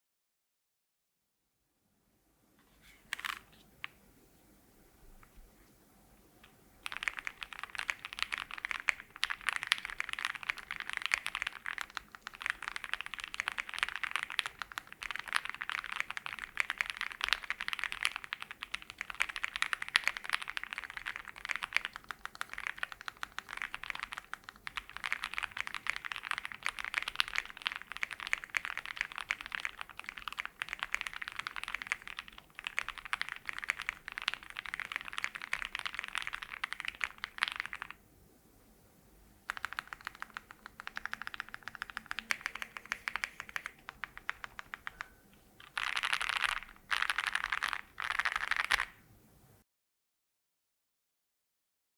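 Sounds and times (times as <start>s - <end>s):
typing on mechanical keyboard: 6.4s - 38.0s, 39.5s - 49.0s.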